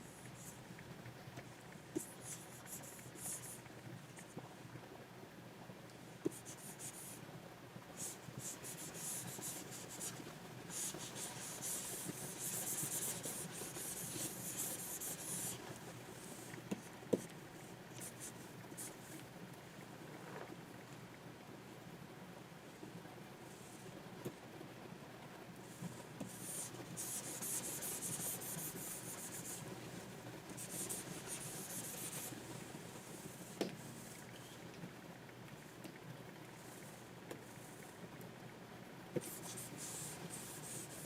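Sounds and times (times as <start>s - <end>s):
pen scratching on tablet: 8.0s - 15.6s, 26.2s - 29.6s, 30.5s - 32.3s, 39.2s - 41.0s.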